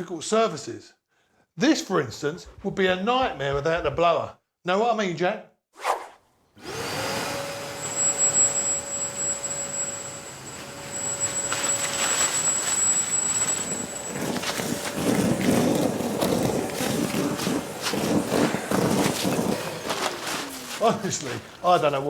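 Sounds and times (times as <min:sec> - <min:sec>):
vacuum blower motor whine: 0:06.6 - 0:22.0
rustling and scraping: 0:10.4 - 0:22.0.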